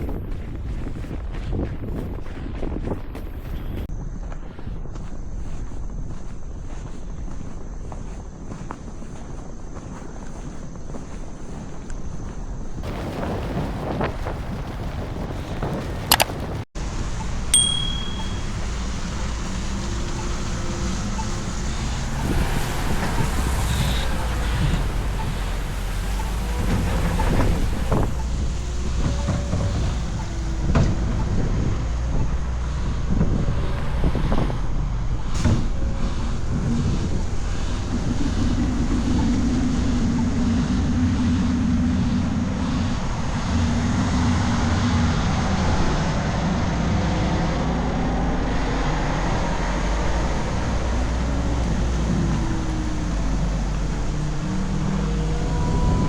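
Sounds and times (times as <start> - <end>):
vehicle engines passing: 12.8 - 56.0.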